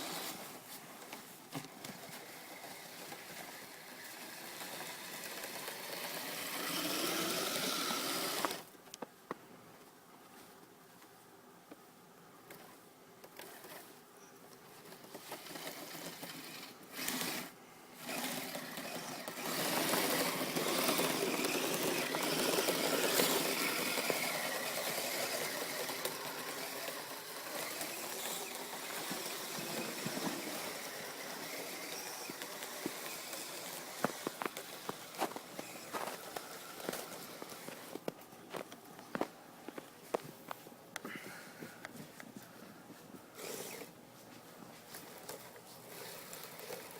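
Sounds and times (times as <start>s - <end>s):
toy vehicle motor whirring: 0.0s - 0.5s, 1.8s - 8.7s, 12.5s - 14.0s, 14.7s - 38.1s, 43.4s - 44.0s, 45.0s - 46.9s.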